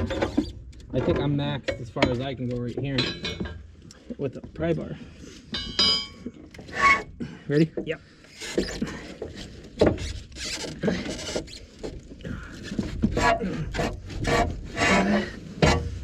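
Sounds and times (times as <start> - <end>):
sharp metal knocks: 0.0 - 3.7, 5.5 - 6.3, 15.6 - 16.0
metal scraping and squealing: 6.6 - 7.7.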